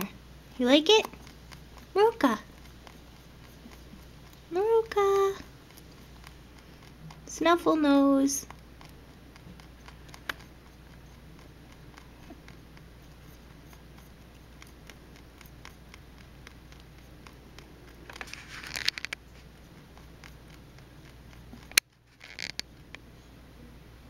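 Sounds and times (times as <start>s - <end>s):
rabbit rustling in hay: 18.2s - 19.5s.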